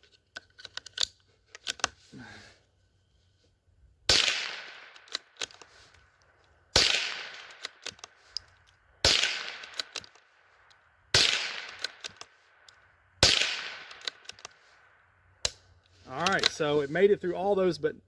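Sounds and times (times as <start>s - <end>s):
rifle shots echoing: 4.1s - 5.4s, 6.7s - 7.9s, 9.0s - 10.3s, 11.1s - 12.3s, 13.2s - 14.4s
light rifle clicks: 4.2s - 16.6s.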